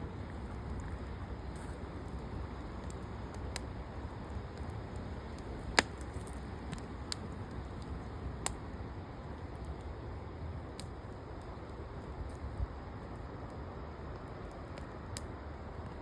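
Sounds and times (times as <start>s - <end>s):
firewood crackling and popping: 0.0s - 16.0s.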